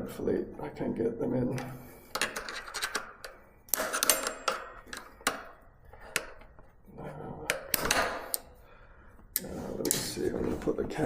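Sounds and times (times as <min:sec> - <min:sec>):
pliers scraping metal: 0:02.2 - 0:05.2.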